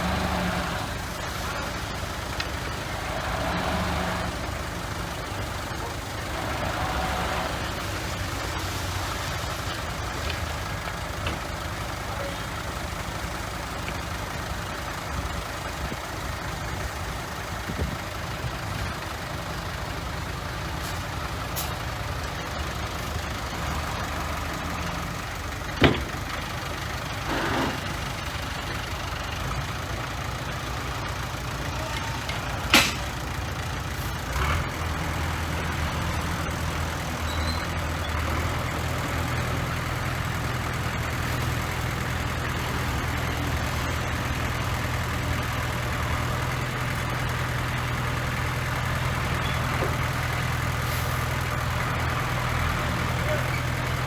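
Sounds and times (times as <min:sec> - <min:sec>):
heavy diesel machinery rumbling: 0:00.0 - 0:54.0
sharp metal clanks: 0:32.7 - 0:33.1.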